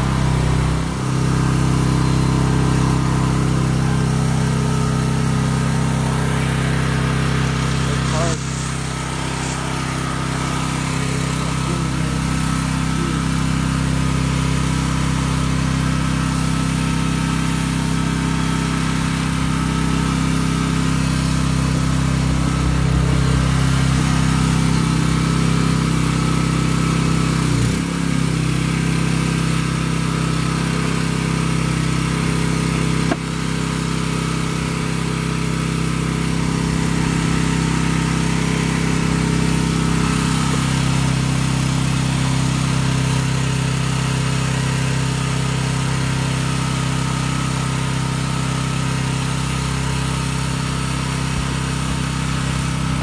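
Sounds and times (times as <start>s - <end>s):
hydraulic pump engine running: 0.0s - 53.0s.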